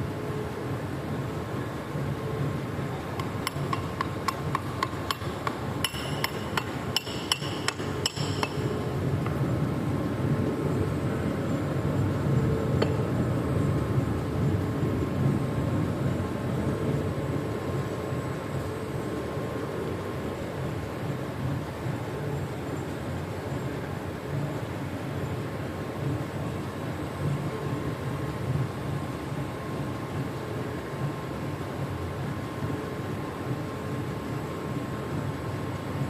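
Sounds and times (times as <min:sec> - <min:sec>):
steady low rumble: 0:00.0 - 0:30.4
hammer tapping on metal: 0:03.2 - 0:08.9.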